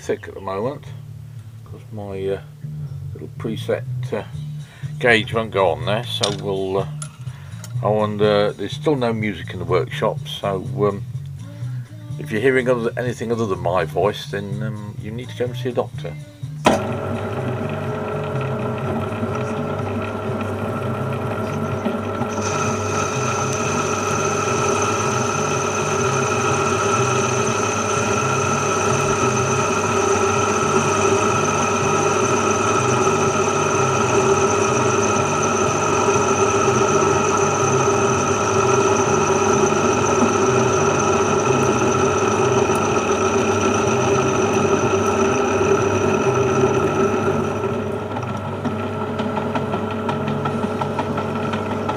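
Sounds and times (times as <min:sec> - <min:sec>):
metal lathe hum and whine: 0:15.4 - 0:51.9
higher whine: 0:16.6 - 0:51.9.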